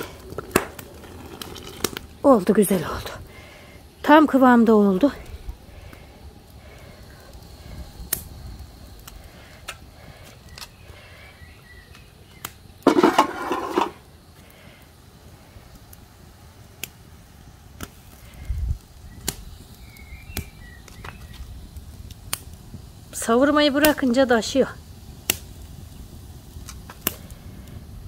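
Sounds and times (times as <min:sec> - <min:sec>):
syrup boiling: 0:12.8 - 0:14.0.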